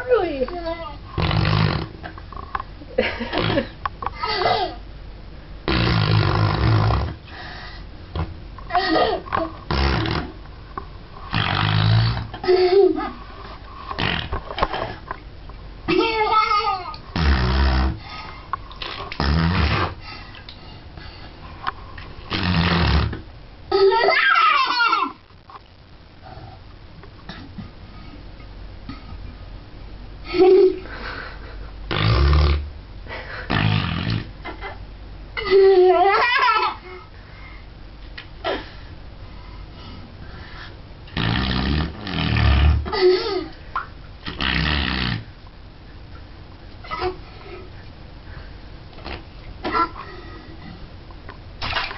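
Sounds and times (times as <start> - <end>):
cup in bathwater fart noises: 1.2 - 2.2, 3.1 - 3.8, 5.6 - 7.2, 9.3 - 10.4, 11.3 - 12.6, 13.9 - 15.1, 17.1 - 18.0, 18.7 - 20.0, 22.3 - 23.3, 31.9 - 32.7, 33.5 - 34.6, 41.1 - 45.3
child laughing: 3.0 - 4.8, 8.7 - 9.5, 12.4 - 13.2, 15.9 - 17.0, 23.7 - 25.2, 30.3 - 30.9, 35.4 - 37.1, 42.9 - 43.6.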